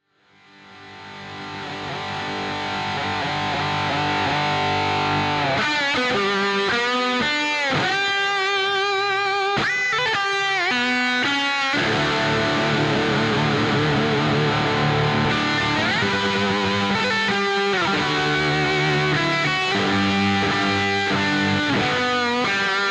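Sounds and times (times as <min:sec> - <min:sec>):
electric guitar chords: 0:00.2 - 0:22.9
lead guitar bending notes: 0:00.7 - 0:22.9.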